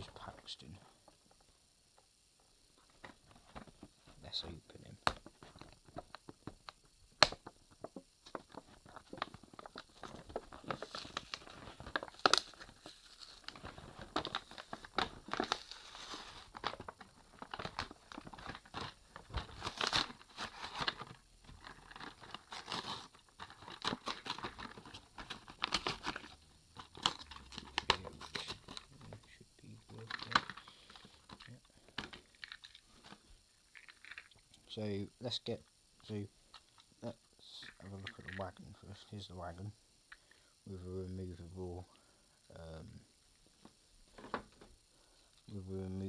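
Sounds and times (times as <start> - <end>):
plastic and cardboard crinkling: 2.8 - 34.3, 43.6 - 44.7.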